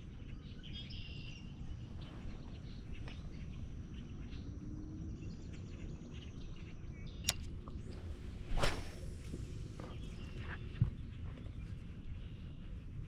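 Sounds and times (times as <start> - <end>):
faint bird chirps: 0.0 - 7.4
steady low rumble: 1.5 - 13.0.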